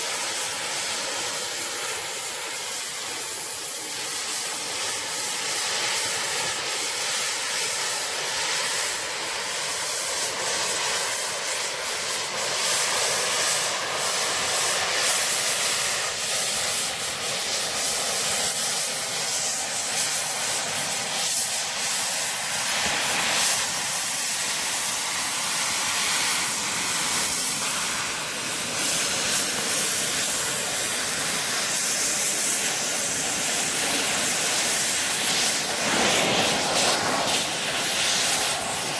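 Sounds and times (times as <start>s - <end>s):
cutting torch hissing: 0.0s - 38.9s
faint crackles: 26.2s - 38.9s.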